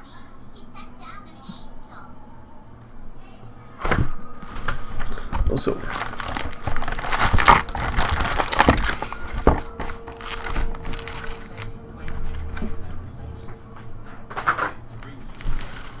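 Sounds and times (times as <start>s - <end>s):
card pack wrappers crinkling: 4.4s - 12.9s, 13.8s - 16.0s.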